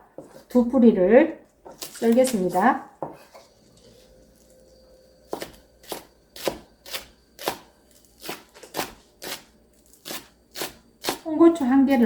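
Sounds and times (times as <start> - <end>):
knife chopping on cutting board: 5.3 - 11.2.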